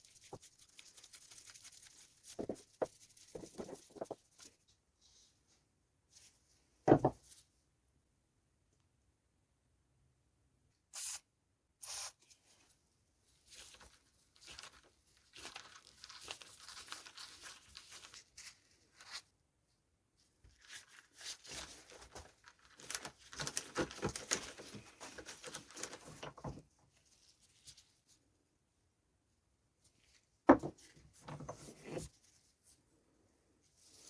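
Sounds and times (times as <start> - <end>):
short hissing bursts: 10.9 - 11.2, 11.8 - 12.2.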